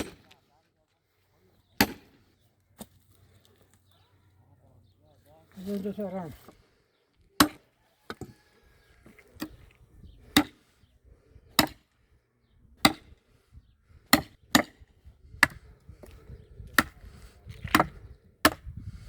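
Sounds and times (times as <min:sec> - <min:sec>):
sledgehammer striking a wedge: 0:00.0 - 0:00.4, 0:01.8 - 0:02.2, 0:07.4 - 0:08.3, 0:10.3 - 0:10.6, 0:11.5 - 0:11.8, 0:12.8 - 0:13.2, 0:14.1 - 0:14.8, 0:15.4 - 0:15.6, 0:16.7 - 0:18.7.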